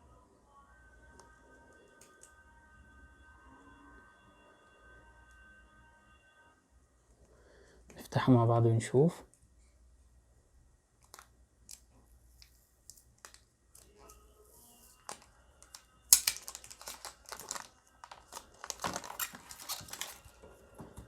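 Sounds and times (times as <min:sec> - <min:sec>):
packaging clicks and taps: 0:11.0 - 0:11.8, 0:12.4 - 0:14.2, 0:14.9 - 0:21.0
packaging crinkling and rustling: 0:14.9 - 0:21.0.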